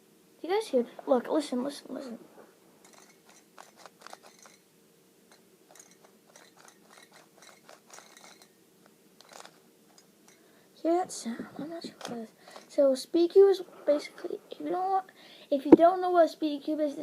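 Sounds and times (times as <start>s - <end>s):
low steady hum: 0.0s - 17.0s
plastic puzzle cube clicking: 2.9s - 4.6s, 5.8s - 8.5s, 9.2s - 9.6s.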